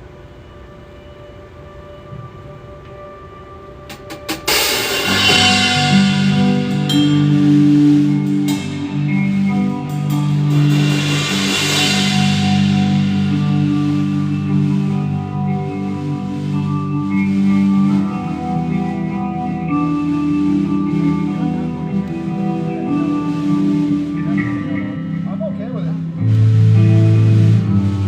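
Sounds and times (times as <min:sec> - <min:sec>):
live band playing: 0:03.9 - 0:28.0
cymbal crash: 0:04.0 - 0:17.9.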